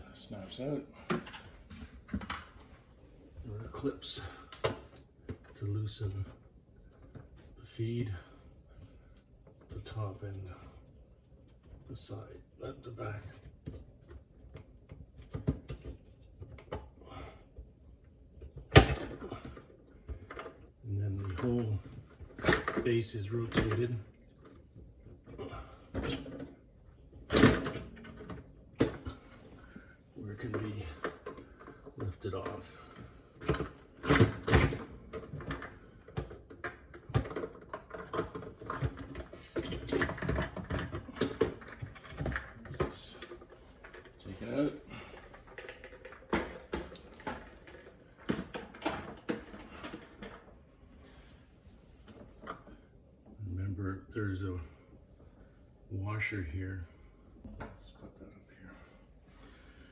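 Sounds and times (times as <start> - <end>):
plastic parts clicking and rattling: 30.5 - 50.6.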